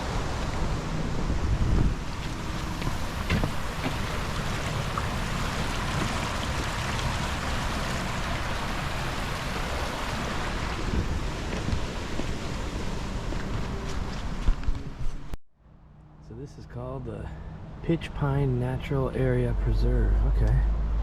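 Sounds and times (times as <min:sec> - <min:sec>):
wind buffeting the microphone: 0:00.0 - 0:15.4.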